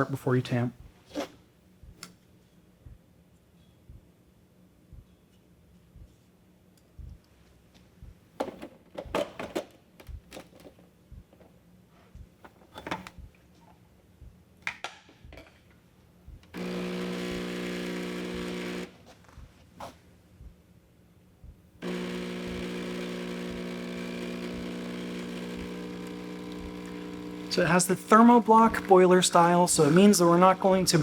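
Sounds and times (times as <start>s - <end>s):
steady electric buzz: 16.5s - 19.0s, 21.8s - 31.0s
portafilter knocks and clicks: 21.8s - 31.0s.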